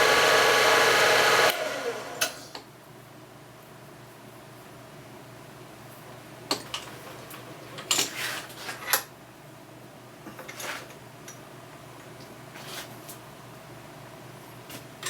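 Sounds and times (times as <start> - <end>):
steady fan hum: 0.0 - 15.0.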